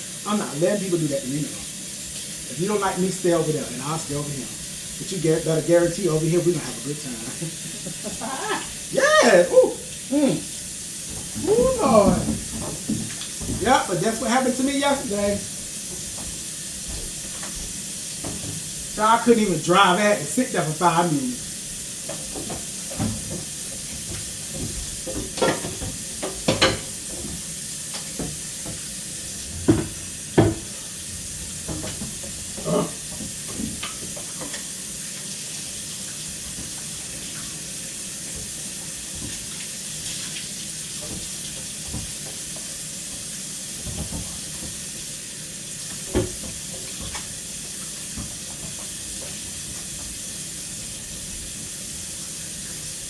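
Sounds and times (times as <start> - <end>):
running water hiss: 0.0 - 53.0
dishes and utensils clattering: 22.1 - 34.8.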